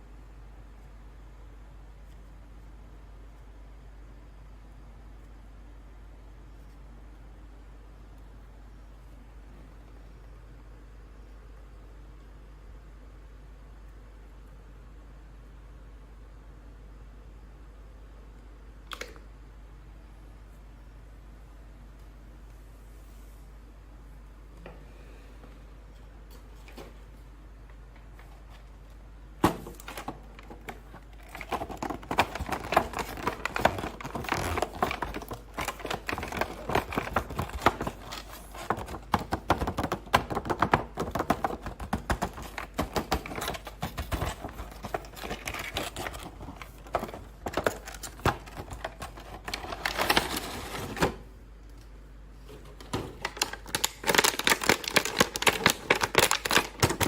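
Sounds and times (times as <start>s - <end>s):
plastic and cardboard crinkling: 27.9s - 51.3s, 52.4s - 57.0s.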